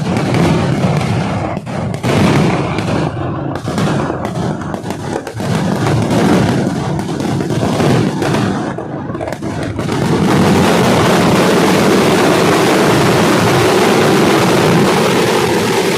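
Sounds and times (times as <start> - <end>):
firecrackers banging: 0.0 - 15.9.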